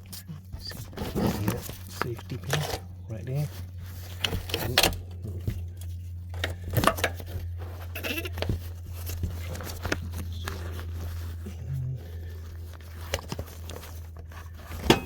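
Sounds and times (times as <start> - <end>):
steady low hum: 0.0 - 15.0
parts clicking and knocking: 3.6 - 10.8, 12.6 - 15.0.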